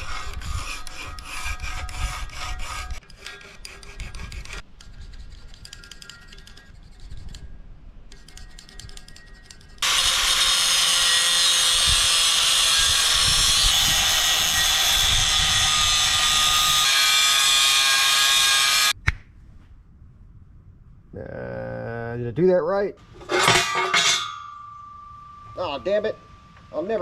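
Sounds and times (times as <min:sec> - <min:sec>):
angle grinder whining: 0:09.8 - 0:18.9.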